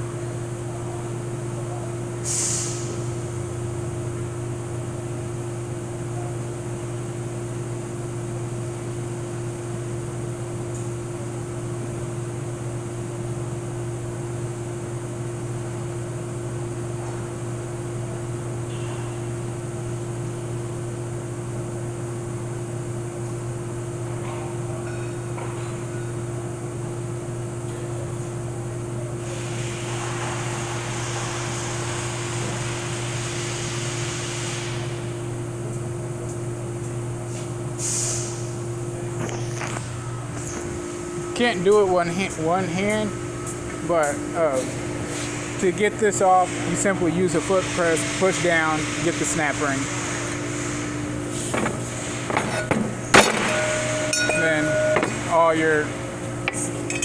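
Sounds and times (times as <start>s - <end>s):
machine hum with two tones: 0.0s - 57.0s
short sharp hiss: 2.2s - 2.9s, 37.8s - 38.5s.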